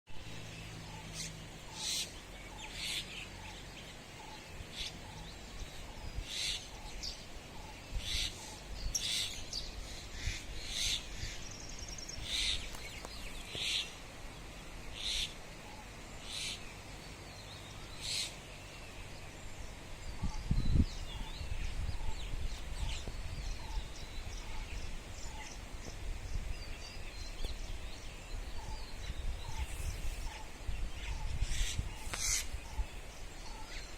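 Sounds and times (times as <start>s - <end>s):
birds chirping: 0.1s - 33.9s
low steady background rumble: 0.2s - 33.9s.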